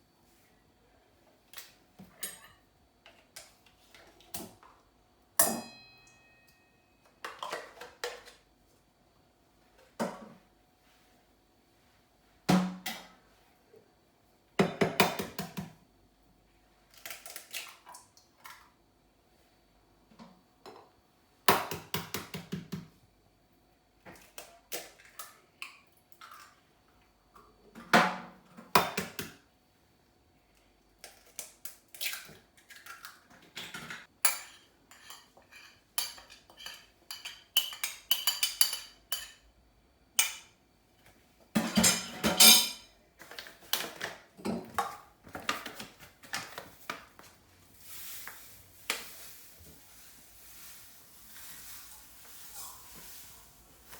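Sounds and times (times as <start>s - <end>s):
bowl cups and spoons clinking: 34.2s - 39.5s, 41.6s - 42.9s.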